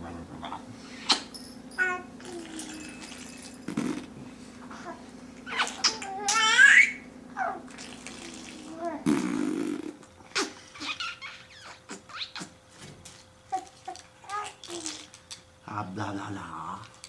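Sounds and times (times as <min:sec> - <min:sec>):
steady low hum: 0:00.0 - 0:17.0
low buzzy blowing sounds: 0:02.1 - 0:10.8.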